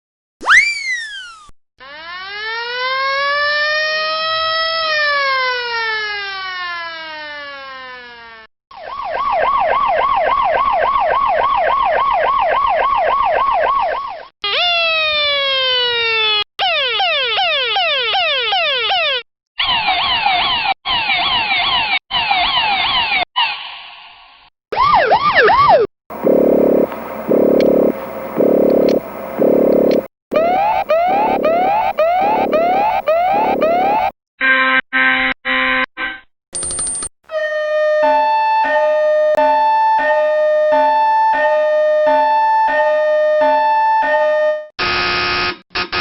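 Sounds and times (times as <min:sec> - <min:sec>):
siren falling sweeps: 0:26.1 - 0:34.1, 0:37.3 - 0:44.7
siren wailing: 0:26.1 - 0:34.1, 0:37.3 - 0:44.7
siren warbling: 0:26.1 - 0:34.1, 0:37.3 - 0:44.7.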